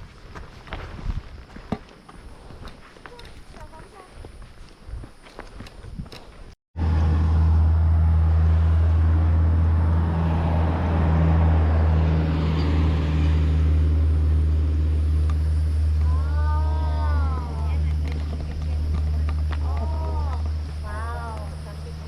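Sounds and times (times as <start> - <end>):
road noise: 0.0 - 22.0
motor vehicle engine droning: 6.8 - 22.0.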